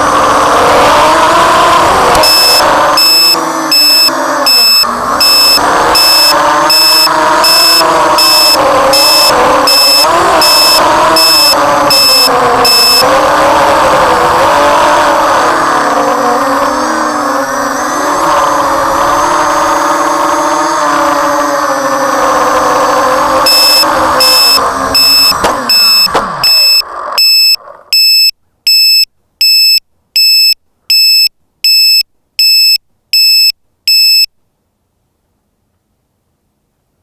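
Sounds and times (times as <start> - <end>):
quadcopter motors whining: 0.0 - 28.1
steady beeps: 2.1 - 13.1, 23.4 - 34.3.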